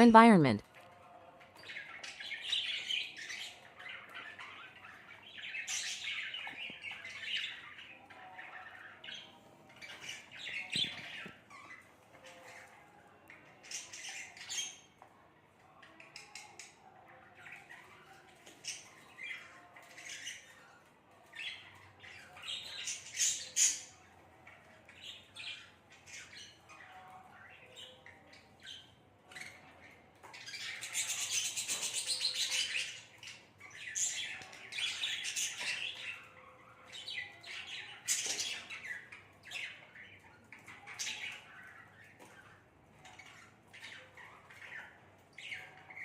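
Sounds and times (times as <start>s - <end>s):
budgerigars chirping and squawking: 1.6s - 12.8s, 24.9s - 46.0s.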